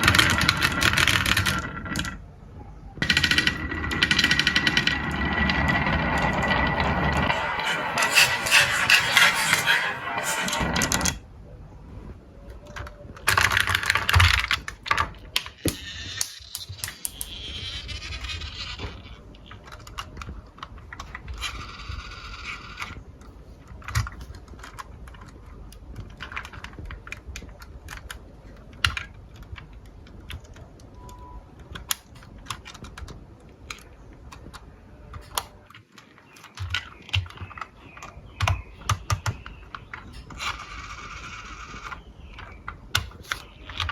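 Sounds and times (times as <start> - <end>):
marbles clacking on wooden run: 0.0 - 2.2, 3.0 - 11.1, 13.3 - 20.3.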